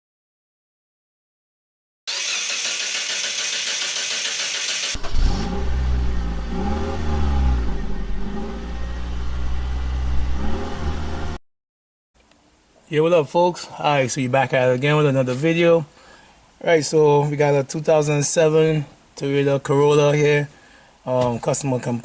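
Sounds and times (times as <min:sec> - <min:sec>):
car engine revving: 0:02.1 - 0:11.4.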